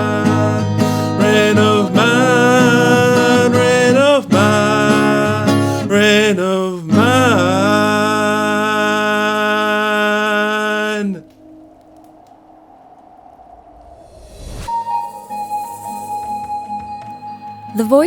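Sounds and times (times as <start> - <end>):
acoustic guitar music: 0.0 - 11.3, 14.8 - 18.0
sliding wavering melody line: 14.7 - 17.9.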